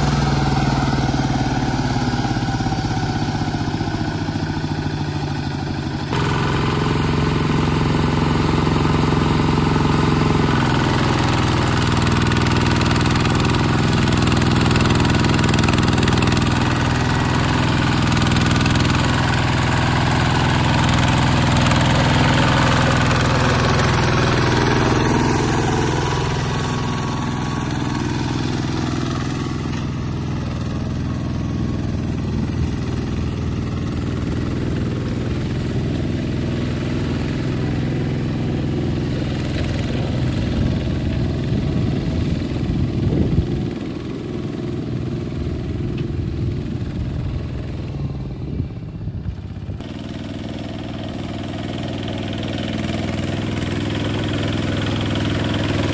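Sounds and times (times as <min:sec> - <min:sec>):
bulldozer engine running: 0:00.0 - 0:55.9.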